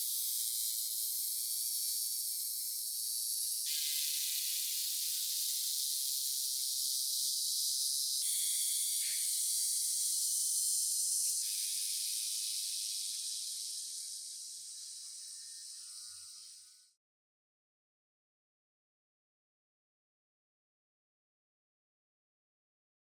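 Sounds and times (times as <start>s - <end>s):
high-pitched spraying hiss: 0.0s - 16.8s.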